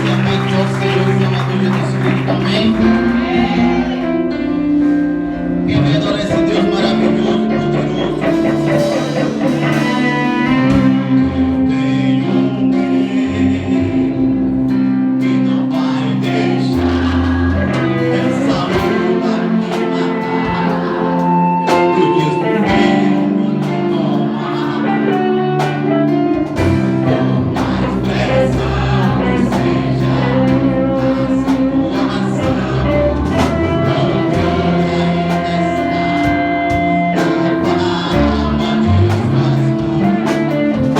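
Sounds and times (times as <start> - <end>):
gospel band playing: 0.0 - 40.9
person singing: 0.0 - 40.9.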